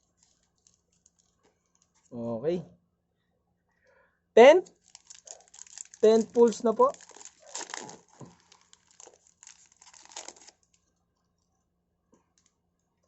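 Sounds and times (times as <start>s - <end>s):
wrapper crinkling and tearing: 0.0s - 2.1s, 4.7s - 10.9s.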